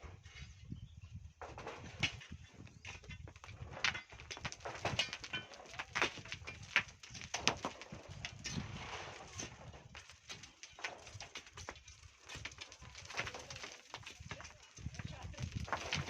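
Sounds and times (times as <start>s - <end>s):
tools scraping in sand: 8.2s - 13.6s.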